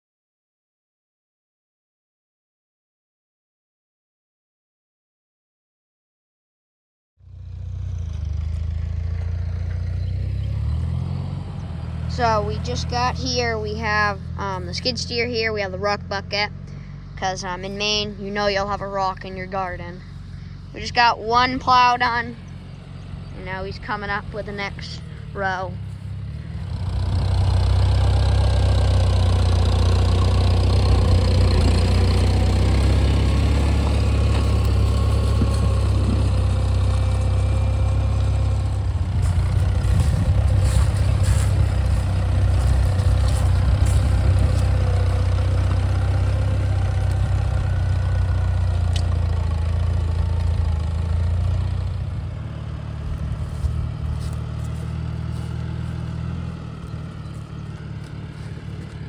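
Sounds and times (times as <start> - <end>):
tractor engine under load: 7.6 - 59.0.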